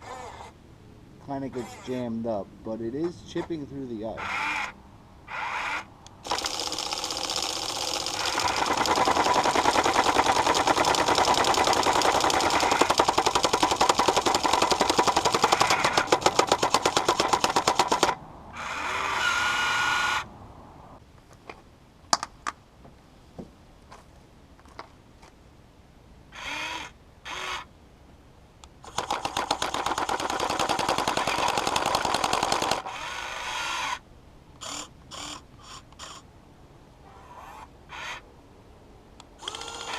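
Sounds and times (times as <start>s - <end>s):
small motor running: 5.3s - 20.1s, 28.8s - 34.0s, 39.4s - 39.9s
jackhammer bit hammering ice: 6.2s - 18.2s, 28.8s - 33.1s.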